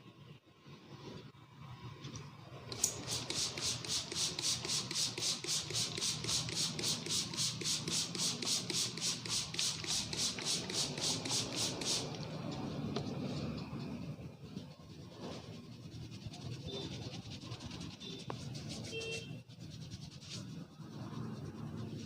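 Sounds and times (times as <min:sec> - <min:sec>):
hands rubbing hair: 0:02.7 - 0:12.8.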